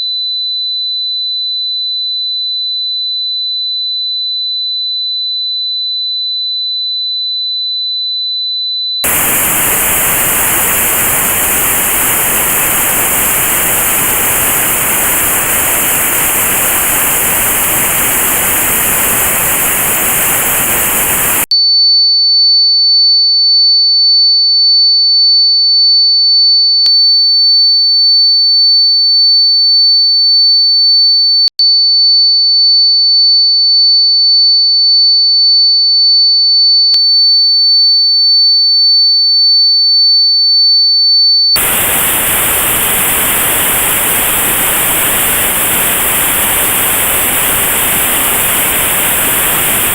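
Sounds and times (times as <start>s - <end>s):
high steady test tone: 9.0s - 21.5s, 41.6s - 49.9s
notched white noise hiss: 9.1s - 21.5s, 41.6s - 49.9s.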